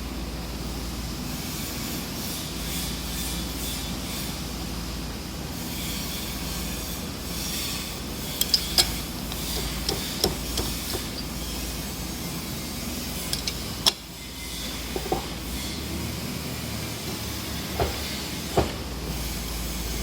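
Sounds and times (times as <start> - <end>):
workshop machine hum: 1.2 - 20.0
metallic taps and clicks: 8.4 - 11.4, 13.2 - 14.0.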